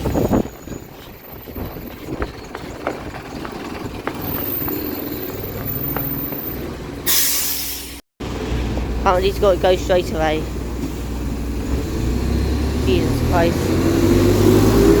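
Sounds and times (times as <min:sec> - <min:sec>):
bus engine idling: 0:00.0 - 0:13.6
footsteps: 0:01.9 - 0:06.8.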